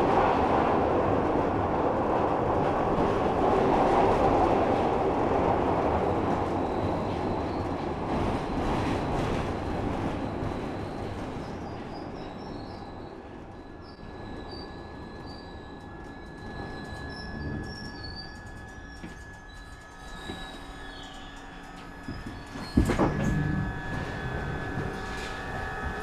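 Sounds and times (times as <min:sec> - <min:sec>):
subway train rumbling: 0:00.0 - 0:26.0
wheel squeals: 0:13.9 - 0:26.0
steady high-pitched tone: 0:15.1 - 0:26.0.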